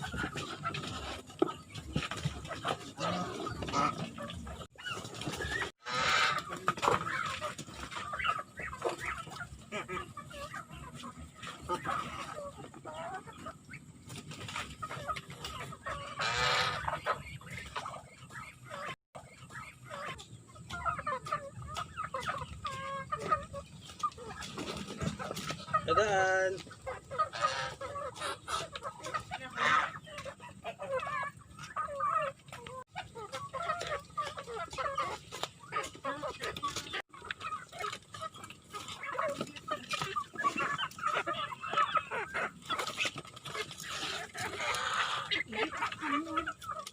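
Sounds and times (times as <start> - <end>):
chickens clucking: 0.0 - 46.9
loud long chicken call: 5.8 - 6.5.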